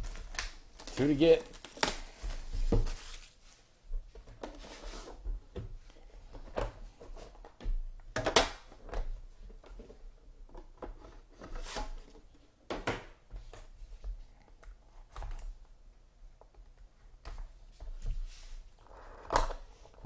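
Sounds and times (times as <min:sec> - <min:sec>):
cards and packaging handled: 0:00.0 - 0:03.4.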